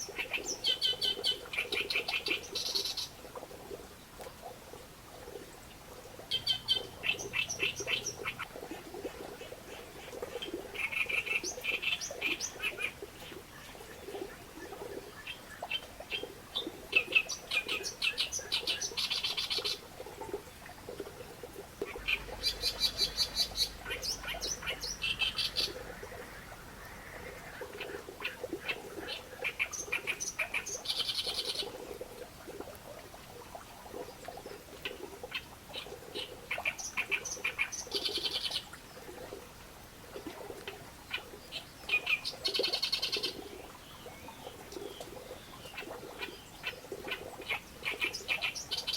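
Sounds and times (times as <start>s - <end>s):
reed warbler chattering song: 21.9s - 31.7s.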